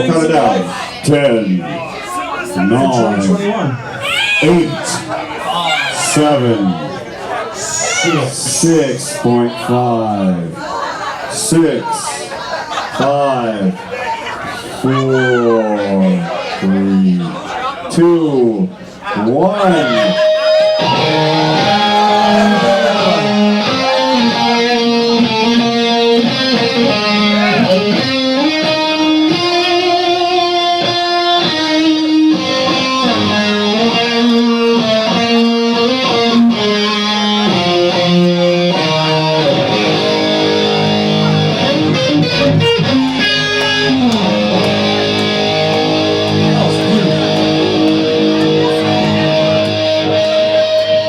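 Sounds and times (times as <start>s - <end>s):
electric guitar bending notes: 19.9s - 51.0s
live band music: 20.6s - 51.0s.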